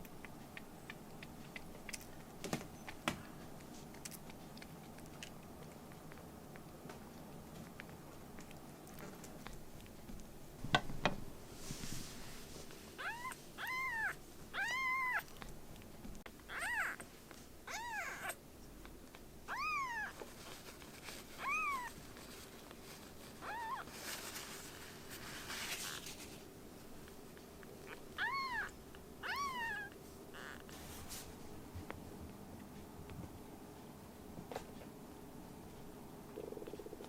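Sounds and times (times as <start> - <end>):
kitten meowing: 13.0 - 15.4, 16.5 - 17.0, 17.7 - 18.4, 19.5 - 20.2, 21.4 - 22.0, 23.4 - 23.9, 27.8 - 30.7.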